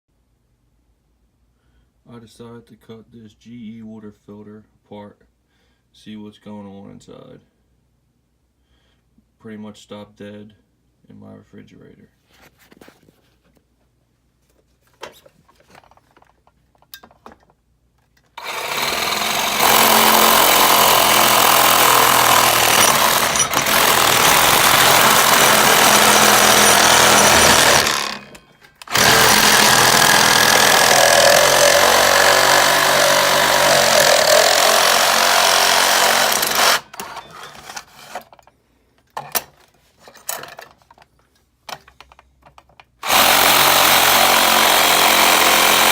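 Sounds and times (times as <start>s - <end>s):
power tool cutting plastic: 18.4s - 38.2s, 43.0s - 45.9s.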